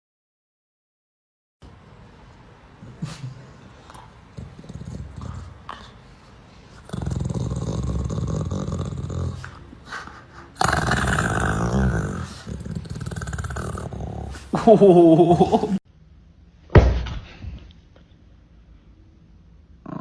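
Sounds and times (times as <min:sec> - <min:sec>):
dog growling: 0:02.8 - 0:15.8.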